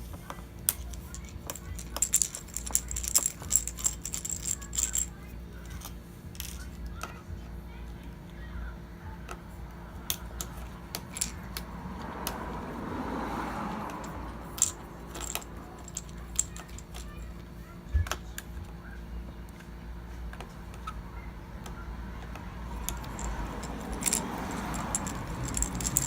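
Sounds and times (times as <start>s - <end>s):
screwdriver and screws clinking: 0.7s - 6.8s, 14.0s - 17.2s, 22.8s - 26.0s.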